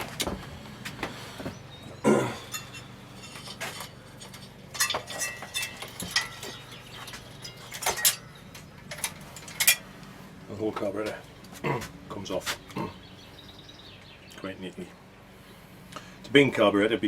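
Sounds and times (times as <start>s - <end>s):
metal tools clinking and knocking: 2.3s - 9.9s.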